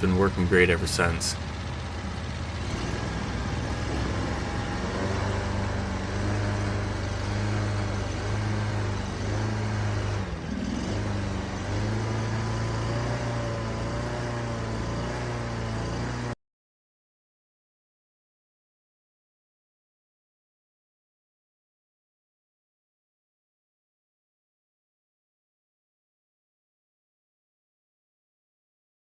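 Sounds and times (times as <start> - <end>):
boat engine droning: 0.0 - 16.4.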